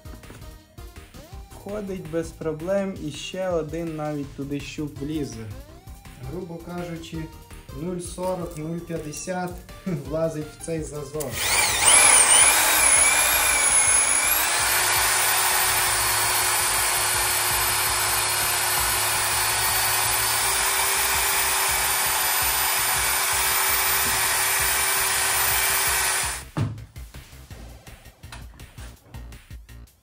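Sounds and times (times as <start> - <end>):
power tool motor whining: 11.2 - 26.5.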